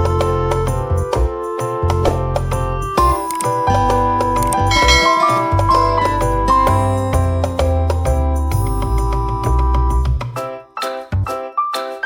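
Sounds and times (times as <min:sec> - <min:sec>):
playful keyboard tune: 0:00.0 - 0:12.0
steady bass line: 0:02.5 - 0:10.2.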